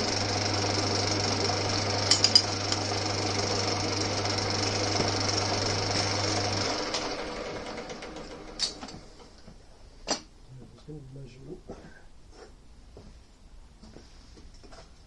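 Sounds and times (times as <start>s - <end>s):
lathe motor humming: 0.0s - 8.6s.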